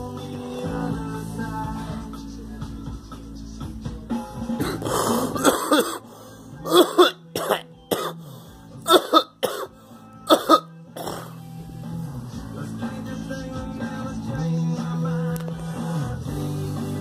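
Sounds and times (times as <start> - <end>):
people coughing: 4.6 - 8.2, 8.8 - 11.4
throat clearing: 4.6 - 8.2, 8.8 - 11.4.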